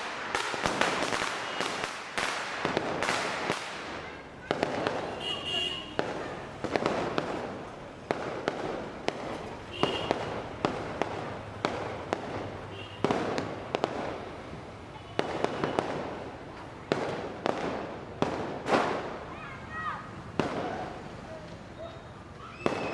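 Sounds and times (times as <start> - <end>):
distant crackling and booming: 0.0 - 16.3
firecracker bangs: 0.0 - 19.4, 20.2 - 21.2, 22.5 - 22.9.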